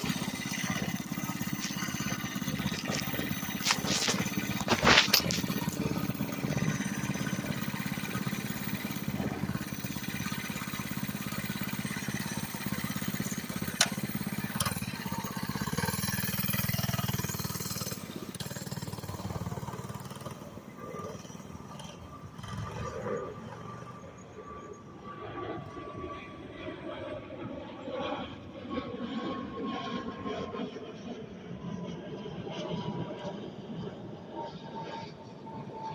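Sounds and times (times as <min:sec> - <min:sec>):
minibike engine running: 0:00.0 - 0:25.4.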